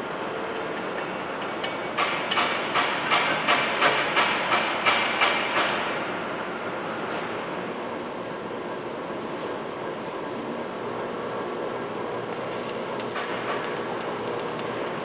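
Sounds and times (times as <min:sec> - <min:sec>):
hammer striking metal: 0:01.6 - 0:06.0.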